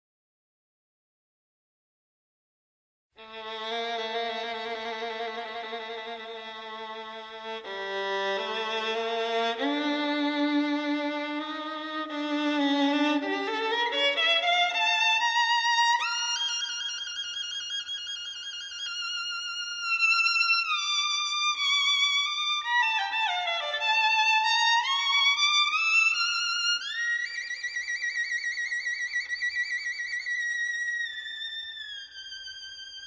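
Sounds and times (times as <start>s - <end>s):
solo violin slow melody: 3.2s - 33.0s.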